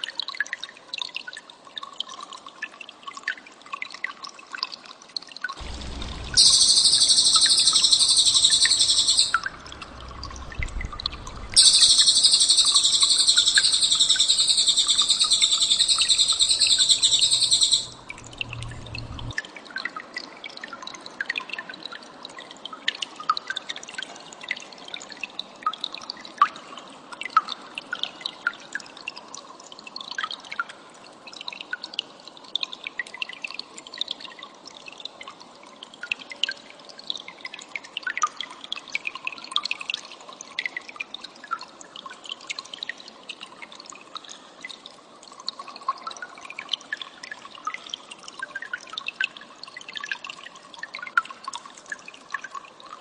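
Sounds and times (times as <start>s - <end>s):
steady hiss: 5.6s - 19.3s
bird sharp high chips: 5.7s - 10.7s, 11.6s - 18.1s.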